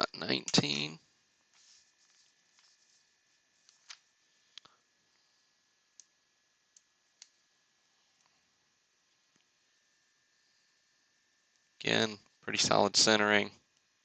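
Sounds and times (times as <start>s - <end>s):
faint rustle: 1.4s - 5.6s.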